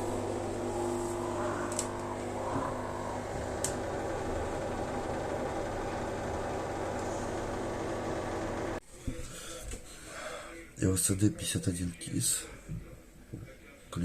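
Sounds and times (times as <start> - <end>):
washing machine humming: 0.0 - 8.8.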